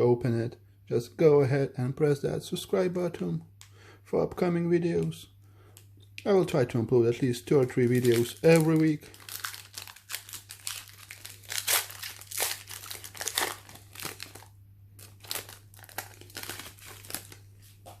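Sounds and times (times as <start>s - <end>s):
foil wrapper crinkling: 7.6s - 18.0s.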